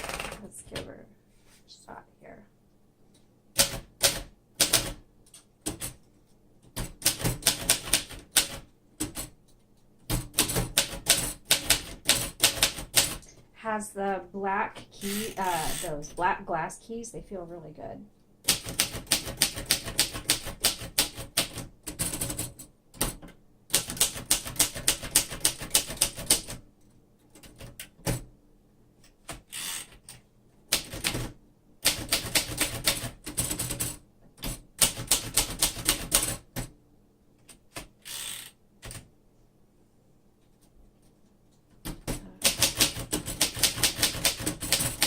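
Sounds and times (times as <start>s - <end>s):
manual typewriter typing: 0.0s - 0.5s, 3.6s - 6.0s, 6.7s - 9.4s, 10.0s - 13.2s, 18.5s - 26.6s, 27.3s - 28.3s, 30.7s - 36.7s, 41.9s - 45.0s.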